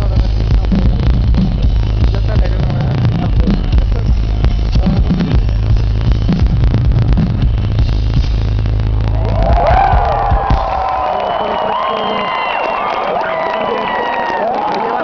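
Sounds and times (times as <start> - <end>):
pounding drums: 0.0 - 11.8
heavy bass: 0.0 - 12.2
rock band playing loud: 0.0 - 13.0
crowd cheering and whistling: 9.0 - 15.0.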